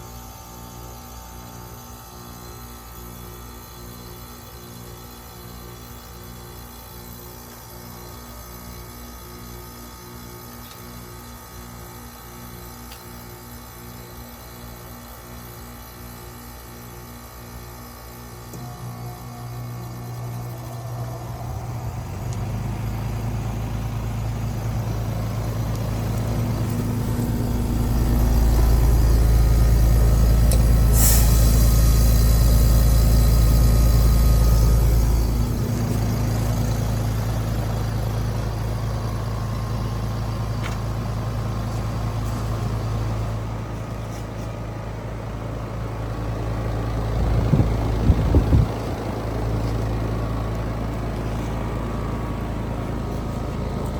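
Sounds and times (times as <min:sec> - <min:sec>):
heat pump compressor hum: 0:00.0 - 0:53.9
short sharp hiss: 0:30.6 - 0:34.9.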